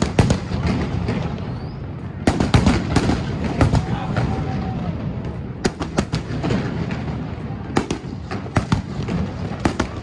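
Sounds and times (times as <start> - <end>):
fireworks cracking and popping: 0.0 - 10.0.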